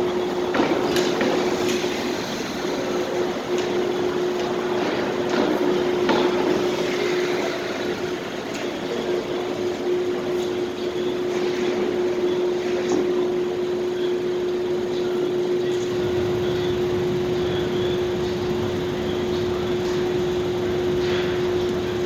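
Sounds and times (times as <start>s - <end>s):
constant mechanical rush: 0.0s - 22.0s
held hum tone: 15.8s - 22.0s.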